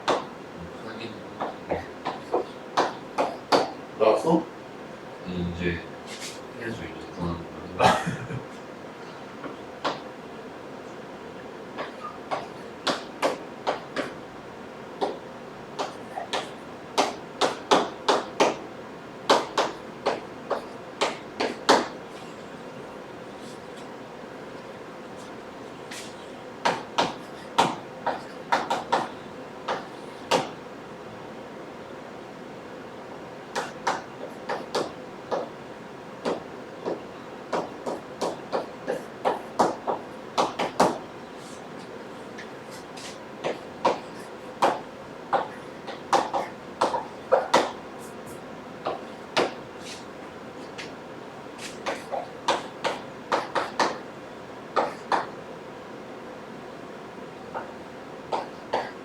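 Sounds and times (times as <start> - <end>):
pen tapping while writing: 0.0 - 0.3, 1.4 - 3.8, 11.8 - 14.2, 15.8 - 18.6, 19.3 - 22.0, 25.9 - 30.6, 33.5 - 35.5, 36.2 - 41.0, 42.4 - 47.8, 51.6 - 54.0, 54.8 - 55.3, 58.3 - 59.0
steady background hiss: 0.0 - 59.0.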